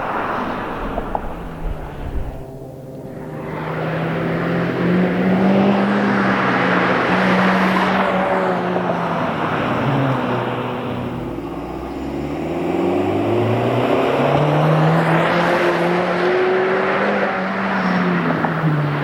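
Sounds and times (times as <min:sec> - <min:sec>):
car engine and exhaust accelerating: 0:00.0 - 0:19.0.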